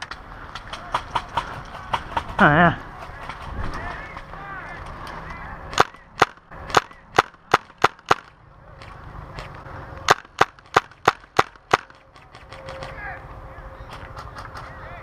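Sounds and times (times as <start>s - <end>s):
airsoft rifle shots: 5.7s - 8.3s, 10.1s - 13.0s.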